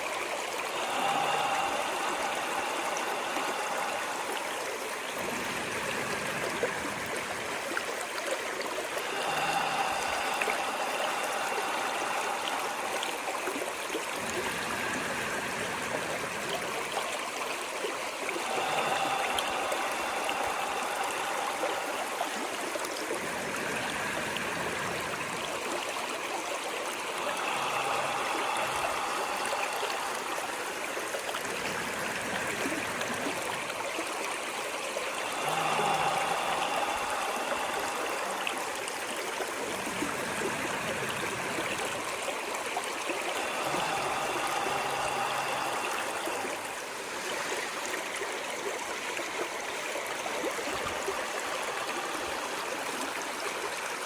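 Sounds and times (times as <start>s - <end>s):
stream water rushing: 0.0s - 54.0s.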